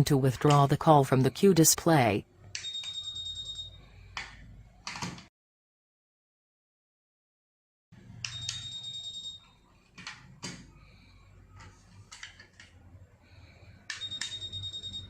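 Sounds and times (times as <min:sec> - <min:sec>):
high steady beep: 0:13.9 - 0:15.0.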